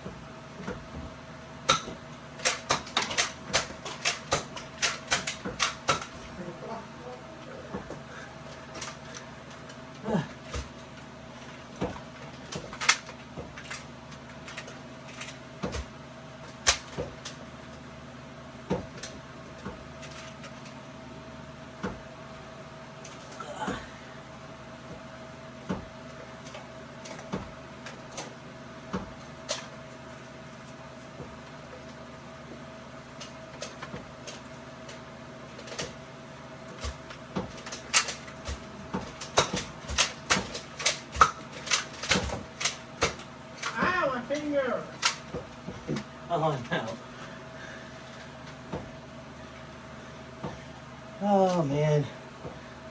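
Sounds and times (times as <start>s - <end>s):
steady low hum: 0.0s - 52.9s
sharp clicks and knocks: 1.7s - 6.2s, 36.7s - 46.1s.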